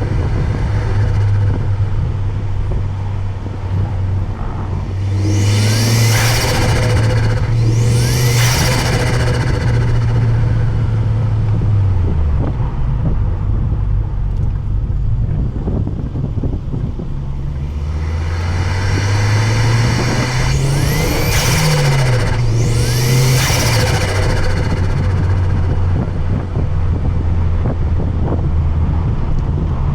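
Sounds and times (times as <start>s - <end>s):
compressor flutter: 0.0s - 11.8s, 17.5s - 27.1s
car engine revving: 0.0s - 13.7s, 17.2s - 27.8s
turbo whistle: 4.8s - 11.2s, 17.6s - 26.4s.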